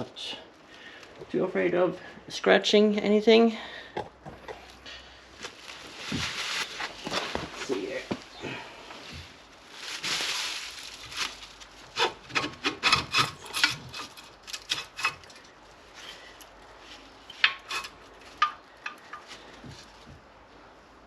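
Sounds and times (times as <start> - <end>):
metal scrape: 17.3 - 18.0
clicks and knocks of metal tools: 17.4 - 19.3.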